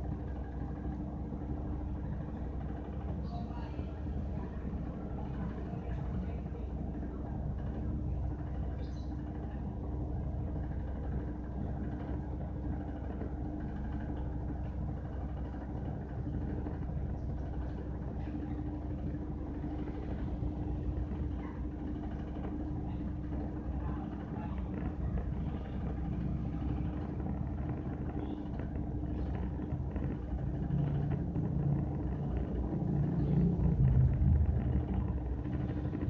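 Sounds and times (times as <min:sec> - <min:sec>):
washing machine running: 0:00.0 - 0:36.0.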